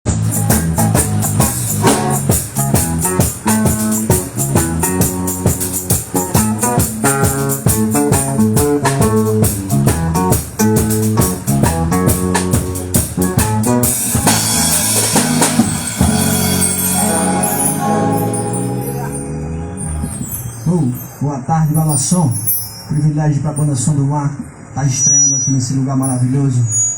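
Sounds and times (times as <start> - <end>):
bass and guitar notes: 0.0 - 25.1
drum kit beat: 0.1 - 19.2.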